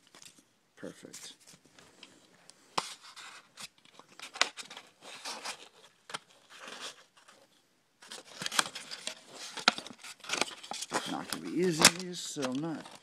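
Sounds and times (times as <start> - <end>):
paper cone tearing and crumpling: 8.2 - 13.0.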